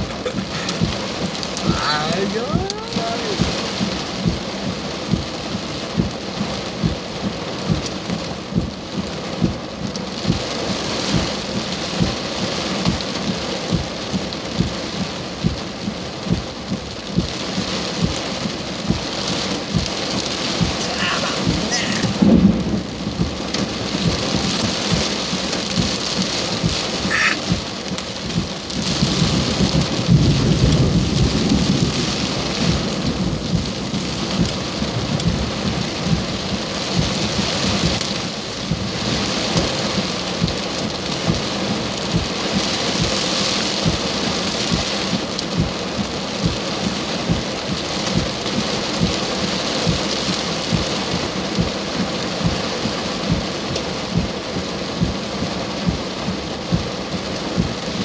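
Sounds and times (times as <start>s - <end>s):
thunder rumbling: 0.0s - 7.8s, 10.2s - 58.0s
heavy rain pouring: 0.0s - 58.0s.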